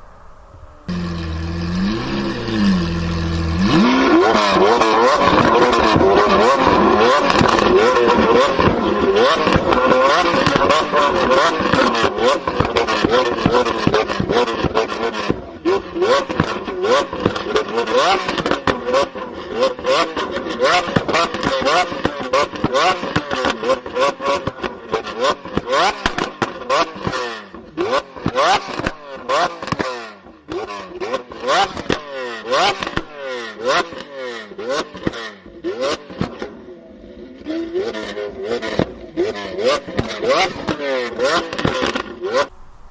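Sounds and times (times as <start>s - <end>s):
exhaust cracks: 0.0s - 25.2s, 38.6s - 42.9s
car engine revving in blips: 0.0s - 36.7s, 37.3s - 42.9s.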